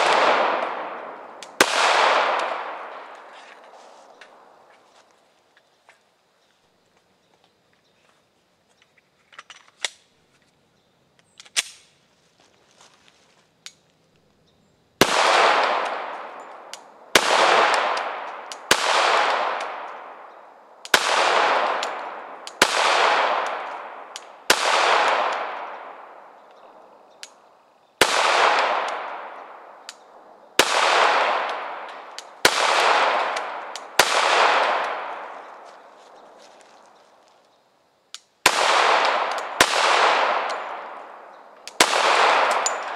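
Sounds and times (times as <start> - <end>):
pistol shots echoing: 0.0 - 3.3, 15.0 - 20.3, 20.9 - 26.8, 28.0 - 29.9, 30.6 - 36.4, 38.4 - 42.9
gun handling clicks: 8.8 - 10.1, 11.2 - 11.9, 42.5 - 42.9.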